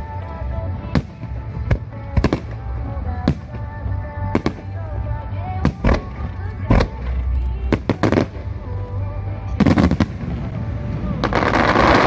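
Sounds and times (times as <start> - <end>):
background music: 0.0 - 12.0
fireworks bangs: 9.6 - 12.0.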